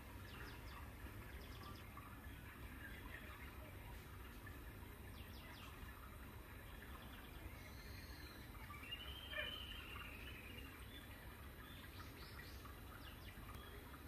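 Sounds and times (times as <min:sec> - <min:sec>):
bird chirps: 0:06.7 - 0:14.0.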